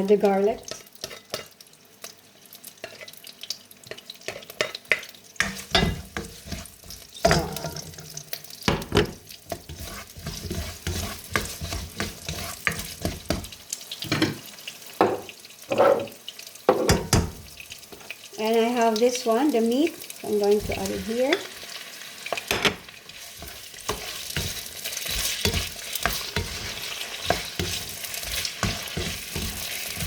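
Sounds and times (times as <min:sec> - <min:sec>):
vegetables sizzling in a pan: 0:00.0 - 0:30.0
utensil scraping and knocking pan: 0:09.0 - 0:13.5, 0:23.4 - 0:30.0.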